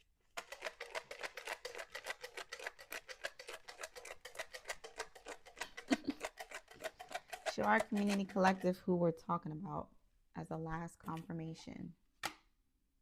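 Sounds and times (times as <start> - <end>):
cards being shuffled: 0.4 - 8.3.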